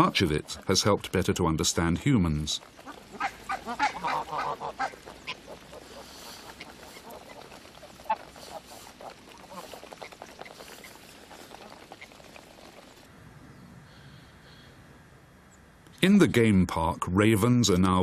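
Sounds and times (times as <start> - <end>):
geese honking: 0.0 - 13.0.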